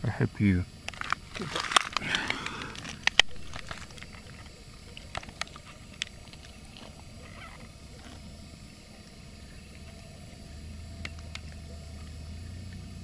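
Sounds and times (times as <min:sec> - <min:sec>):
handling rustling and scraping: 0:00.9 - 0:08.2.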